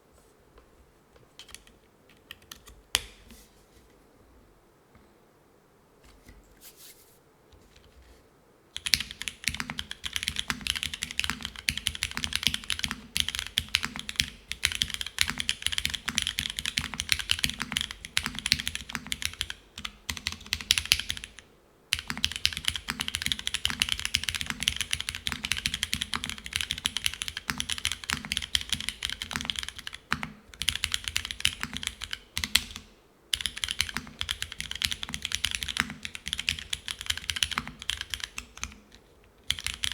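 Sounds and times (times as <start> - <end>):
fast typing on mechanical keyboard: 8.8 - 39.9.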